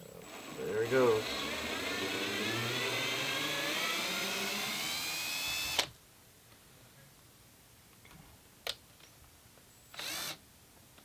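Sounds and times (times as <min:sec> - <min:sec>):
power drill whining: 0:00.2 - 0:05.9, 0:09.9 - 0:10.4.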